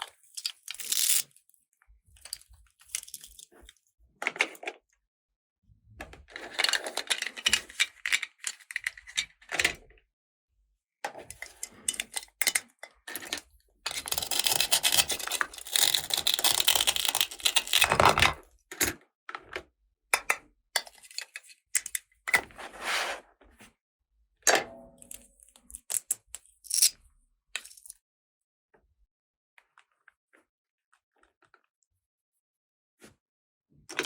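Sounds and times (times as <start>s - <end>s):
plastic toy pieces clicking: 13.9s - 18.2s.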